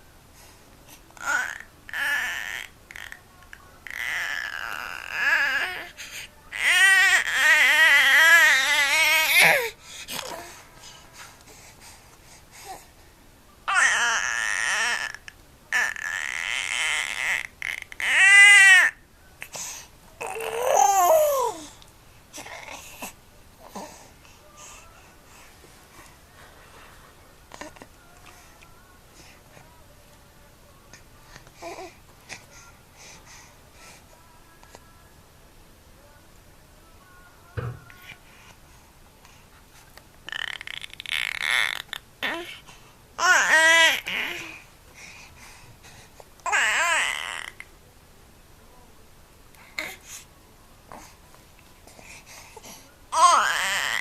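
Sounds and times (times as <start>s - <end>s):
baby making vocal noises: 1.2s - 10.6s, 13.7s - 19.6s, 20.2s - 24.1s, 40.3s - 42.6s, 43.2s - 44.6s, 46.4s - 47.7s, 52.6s - 54.0s
baby babbling and squealing: 40.3s - 42.5s, 46.5s - 47.6s, 53.2s - 54.0s.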